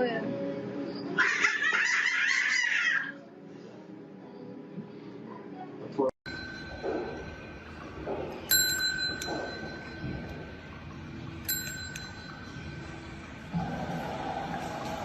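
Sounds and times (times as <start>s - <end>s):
small bell ringing: 6.3s - 7.8s, 8.4s - 10.5s, 11.4s - 12.9s.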